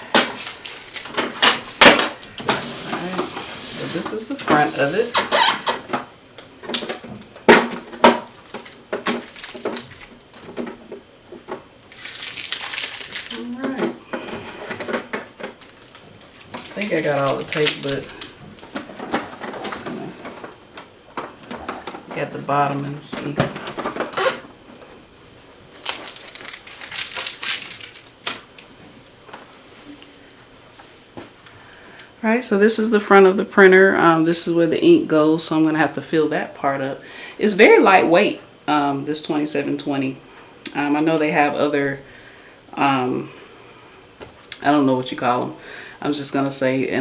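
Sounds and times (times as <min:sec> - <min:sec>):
plastic packaging crinkling: 0:00.0 - 0:24.9, 0:25.5 - 0:30.0.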